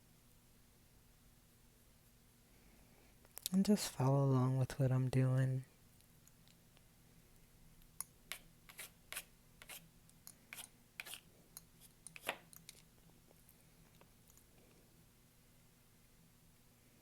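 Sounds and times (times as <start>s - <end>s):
paintbrush scratchy strokes: 8.3s - 9.8s, 10.5s - 12.4s.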